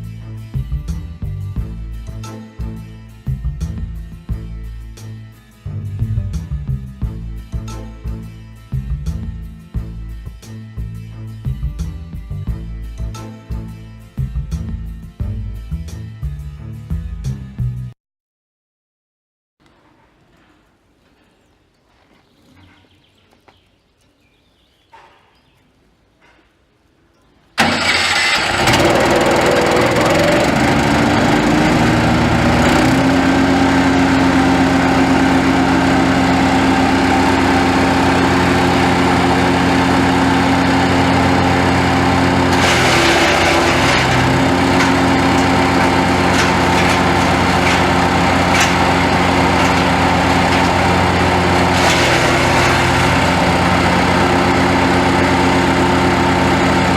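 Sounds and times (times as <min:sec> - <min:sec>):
wood chipper engine running: 0:27.6 - 0:56.9.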